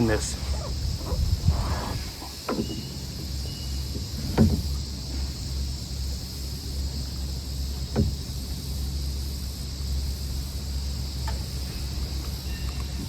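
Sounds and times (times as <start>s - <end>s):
gear knocking in kayak: 0.0s - 9.3s
high insect drone: 0.0s - 13.0s
wind rumbling on microphone: 0.0s - 13.0s.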